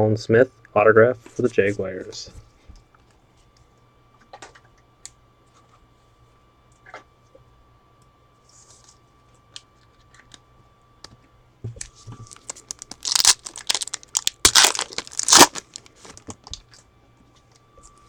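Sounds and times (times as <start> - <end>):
wrapper being torn open: 12.2 - 16.3.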